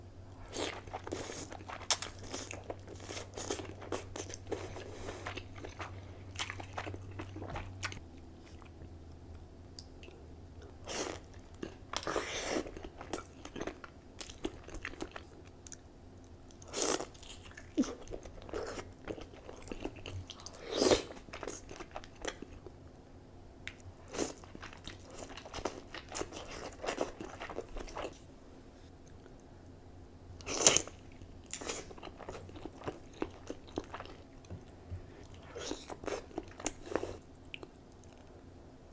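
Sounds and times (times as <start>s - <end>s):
wet chewing: 0.5s - 8.8s, 23.7s - 28.2s, 30.4s - 38.3s.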